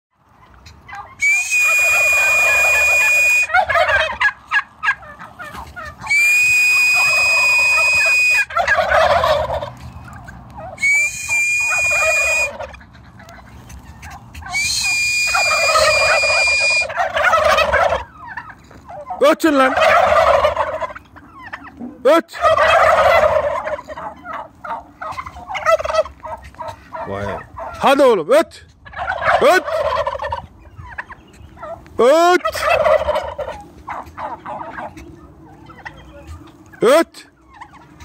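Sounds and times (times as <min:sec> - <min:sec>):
turkeys gobbling: 0:00.2 - 0:38.0
long high whistles: 0:01.2 - 0:03.5, 0:06.1 - 0:08.5, 0:10.8 - 0:12.5, 0:14.5 - 0:16.9.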